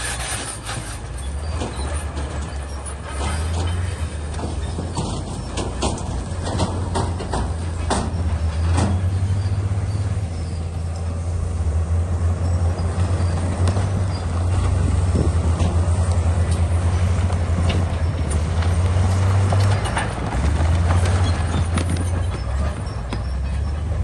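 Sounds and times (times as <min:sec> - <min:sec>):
diesel engine droning: 0:00.0 - 0:24.0
metallic clanks and knocks: 0:00.4 - 0:09.5, 0:13.6 - 0:24.0.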